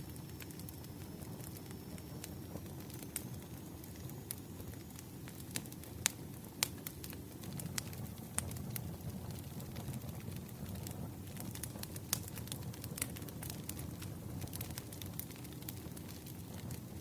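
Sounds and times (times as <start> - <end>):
campfire flames burning: 0.0 - 17.0
fire crackles and pops: 0.0 - 17.0.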